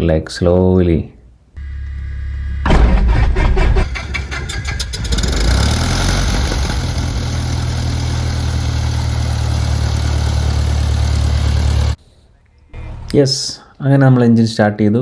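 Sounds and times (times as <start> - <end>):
propeller plane engine idling: 3.8 - 12.0.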